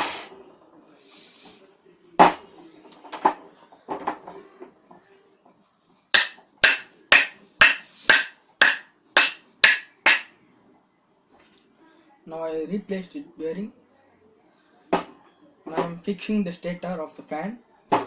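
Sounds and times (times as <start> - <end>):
hammer blows on metal: 6.2 - 10.3.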